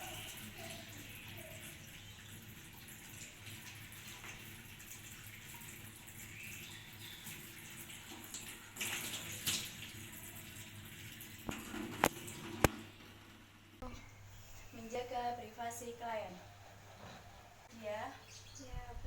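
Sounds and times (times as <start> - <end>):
water running from a tap: 0.0 - 13.2.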